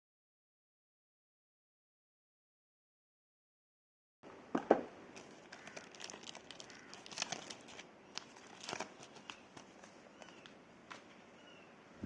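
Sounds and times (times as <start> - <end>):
packaging crinkling: 5.2 - 11.2.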